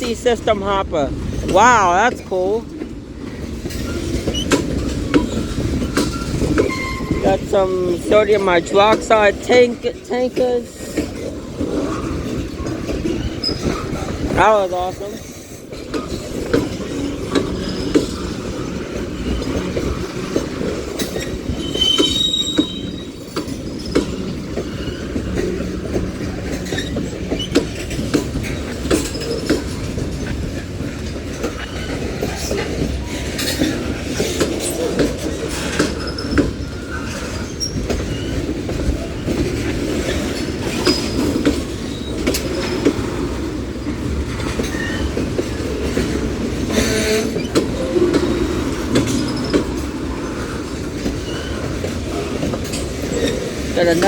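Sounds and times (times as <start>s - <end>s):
freight train wheels rumbling: 0.0s - 54.0s
wheels and couplers clanking: 0.0s - 54.0s
high wheel squeal: 5.3s - 7.4s, 16.1s - 27.6s.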